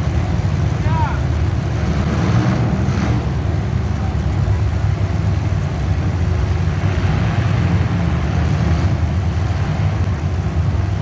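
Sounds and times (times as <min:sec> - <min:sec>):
vehicle engine rumble: 0:00.0 - 0:11.0.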